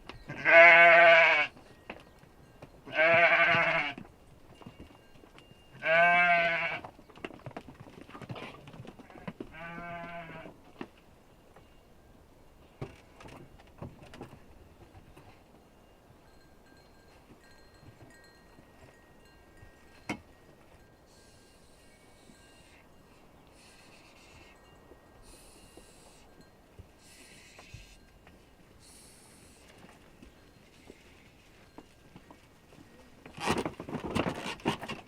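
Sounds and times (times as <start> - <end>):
goats and sheep bleating: 0.3 - 1.6, 2.9 - 4.0, 5.8 - 6.9, 9.0 - 10.6.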